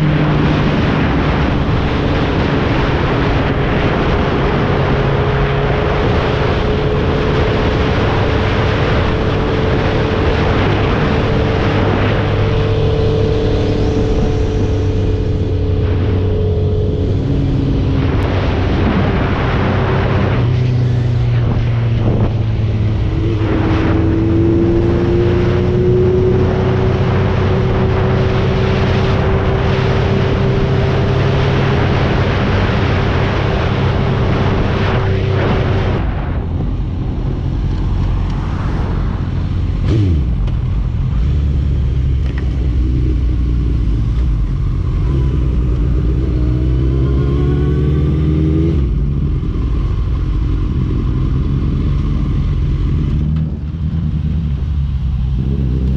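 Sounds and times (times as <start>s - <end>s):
wind rushing over microphone: 0.0s - 55.9s
motorcycle engine running: 39.0s - 55.9s.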